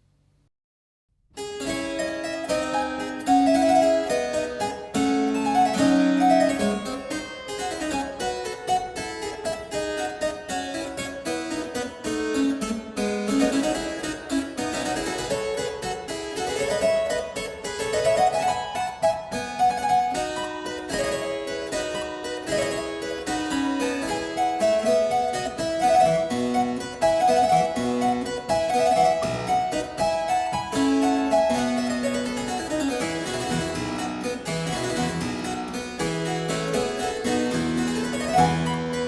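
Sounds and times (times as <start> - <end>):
harpsichord playing quick notes: 12.0 - 39.0.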